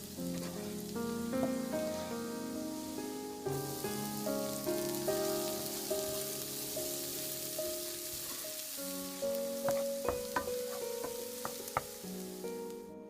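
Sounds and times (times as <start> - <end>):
background music with simple melody: 0.0 - 13.0
food sizzling in hot pan: 0.0 - 13.0.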